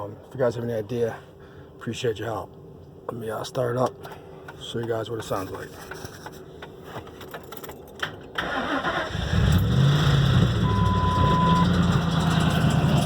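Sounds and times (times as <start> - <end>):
car engine cranking and starting: 7.4 - 13.0
car engine idling: 10.4 - 13.0
short steady beep: 10.6 - 11.7.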